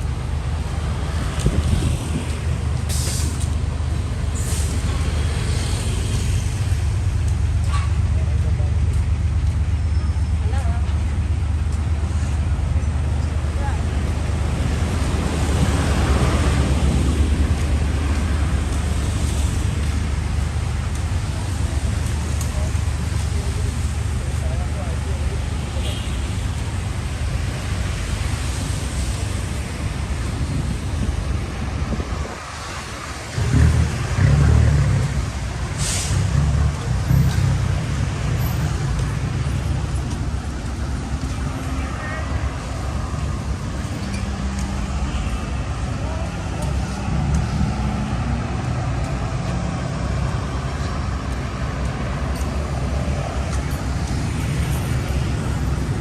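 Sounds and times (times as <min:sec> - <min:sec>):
wind rumbling on microphone: 0:00.0 - 0:07.7, 0:26.6 - 0:41.6
road traffic passing: 0:00.0 - 0:56.0
steady outdoor hiss: 0:11.1 - 0:56.0
short hiss: 0:35.8 - 0:36.2.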